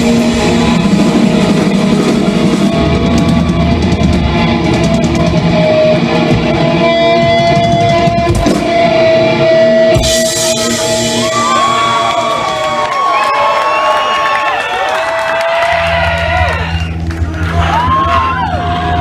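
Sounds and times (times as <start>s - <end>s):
distorted electric guitars ringing: 0.0s - 12.8s
heavy rock band playing: 0.0s - 13.9s, 14.8s - 19.0s.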